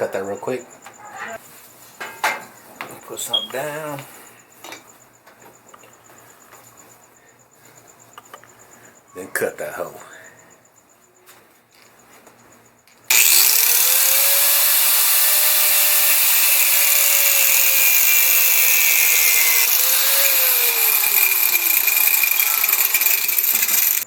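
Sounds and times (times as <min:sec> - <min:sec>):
power tool motor cutting: 0:13.1 - 0:24.0.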